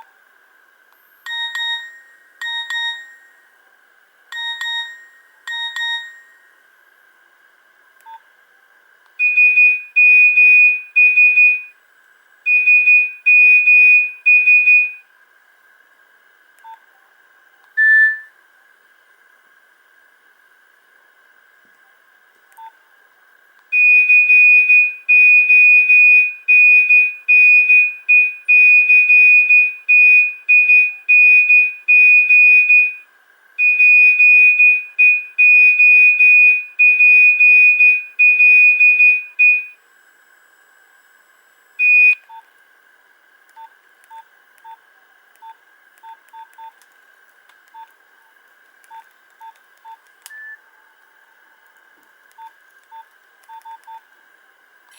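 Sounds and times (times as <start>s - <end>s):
faint steady high whine: 0.0s - 54.9s
monophonic ringtone beeps: 1.3s - 3.4s, 4.4s - 6.5s, 17.8s - 18.3s.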